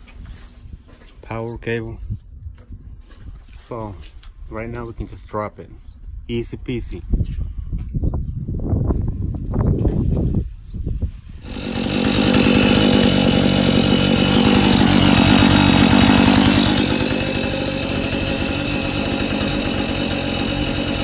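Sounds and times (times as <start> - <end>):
chainsaw cutting at full throttle: 11.4 - 21.0.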